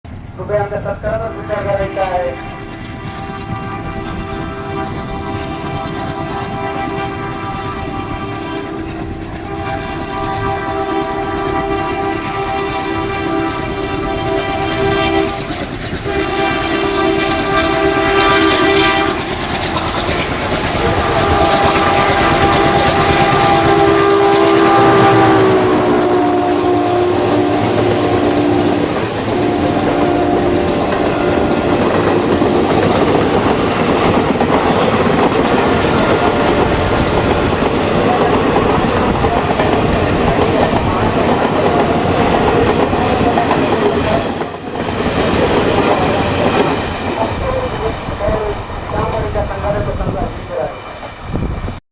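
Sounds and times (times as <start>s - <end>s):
train horn blasts: 1.2s - 34.1s, 40.9s - 47.4s
wheels clacking over rail joints: 12.3s - 48.1s
diesel engine chugging: 40.8s - 47.6s.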